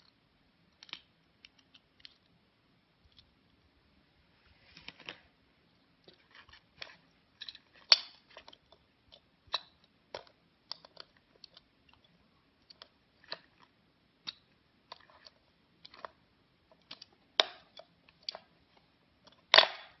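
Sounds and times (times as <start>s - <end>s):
plastic clicks: 0.0s - 2.3s, 6.0s - 18.5s, 19.2s - 20.0s.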